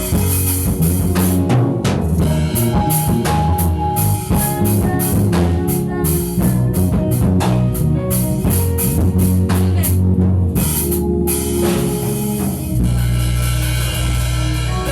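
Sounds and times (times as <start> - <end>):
rock music with drum kit: 0.0 - 14.9.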